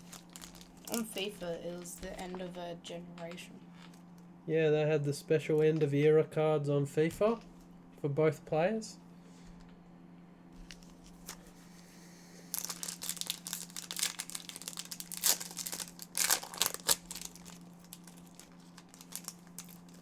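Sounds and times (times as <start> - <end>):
wrapper tearing and crinkling: 0.0 - 1.2, 12.5 - 20.0
steady low hum: 0.0 - 20.0.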